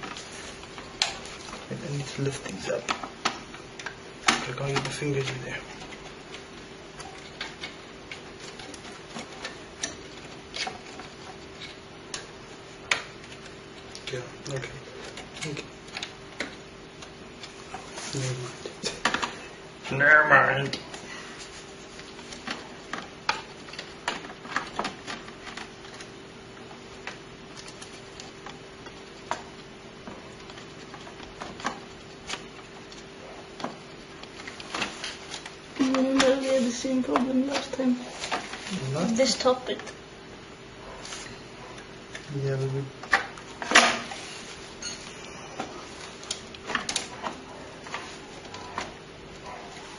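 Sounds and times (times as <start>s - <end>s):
faint steady hum: 0.0s - 49.9s.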